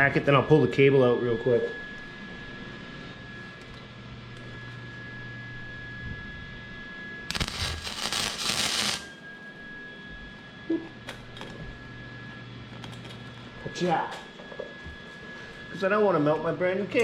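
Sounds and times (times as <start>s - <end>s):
steady electrical hum: 0.0s - 14.4s
welding arc crackling: 7.3s - 9.1s.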